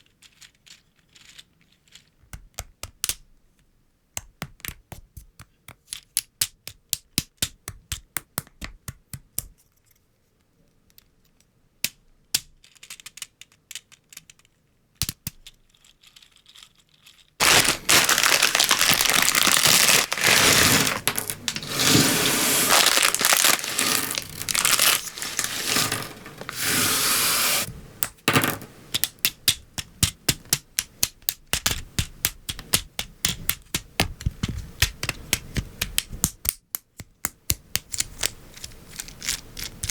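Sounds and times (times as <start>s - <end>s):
plastic pieces clicking together: 0.2s - 3.3s, 10.9s - 26.6s, 28.0s - 39.9s
crinkling and rustling: 15.4s - 29.2s.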